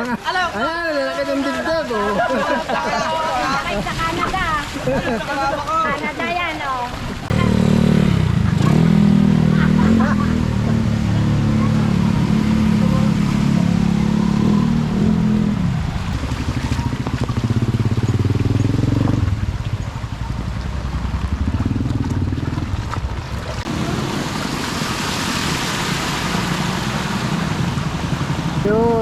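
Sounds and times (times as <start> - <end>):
vehicle engine revving: 6.4 - 29.0.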